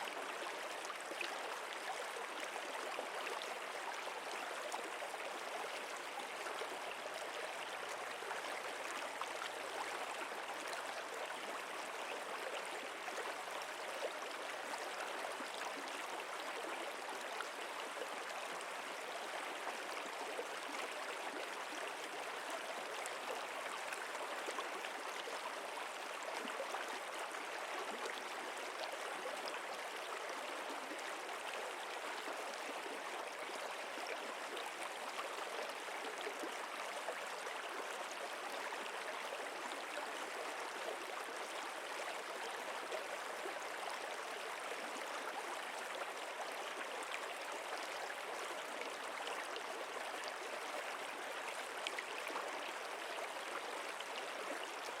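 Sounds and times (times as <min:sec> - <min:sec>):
stream water flowing: 0:00.0 - 0:55.0.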